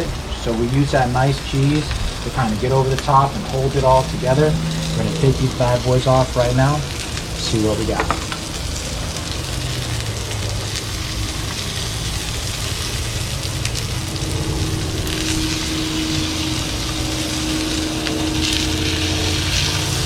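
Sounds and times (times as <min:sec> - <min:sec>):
burger patties sizzling on grill: 0:00.0 - 0:20.0
fire rumbling: 0:00.0 - 0:20.0
steady hum: 0:00.0 - 0:20.0.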